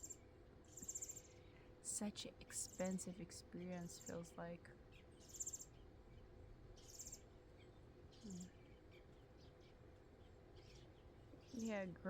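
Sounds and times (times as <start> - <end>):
background hiss: 0.0 - 5.8.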